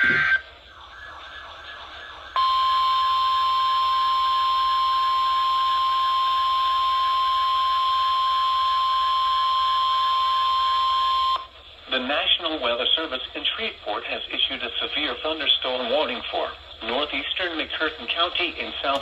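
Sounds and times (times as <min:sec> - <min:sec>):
radio hiss: 0:00.0 - 0:02.9, 0:11.4 - 0:19.0
steady alarm tone: 0:00.0 - 0:11.6.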